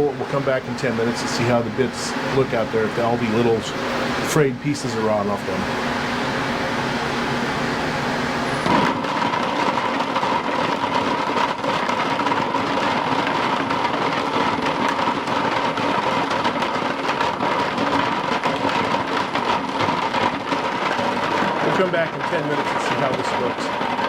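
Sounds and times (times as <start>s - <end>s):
lathe motor hum: 0.0s - 24.0s
wooden pieces rattling in a jar: 8.7s - 24.0s.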